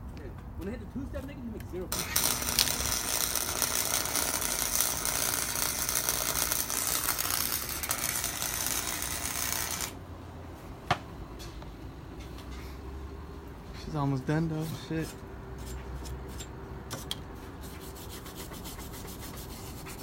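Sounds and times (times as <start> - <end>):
welder crackling: 1.9 - 10.0.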